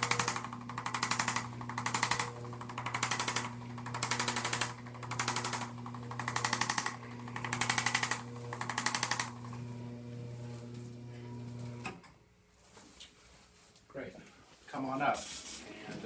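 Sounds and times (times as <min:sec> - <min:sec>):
percussion massager rapid hammering: 0:00.0 - 0:09.5
massager motor humming: 0:00.0 - 0:12.0.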